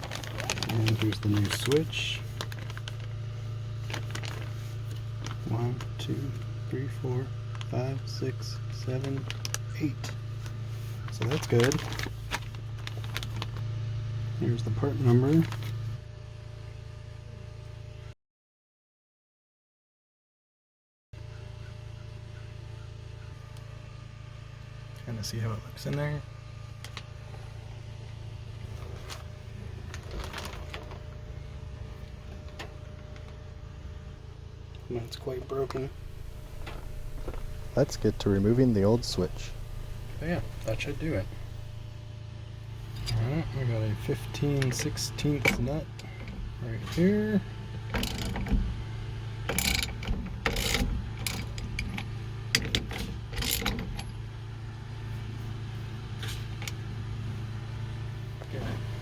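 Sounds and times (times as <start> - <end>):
steady low hum: 0.0 - 18.1, 21.2 - 59.0
light clicks and rattles of parts: 47.9 - 48.7, 49.5 - 54.2.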